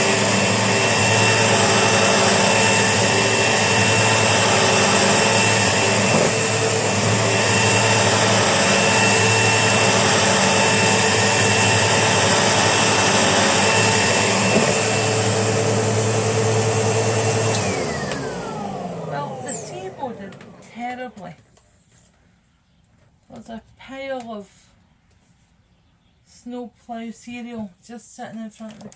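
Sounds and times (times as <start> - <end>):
vacuum cleaner motor whine: 0.0 - 21.4.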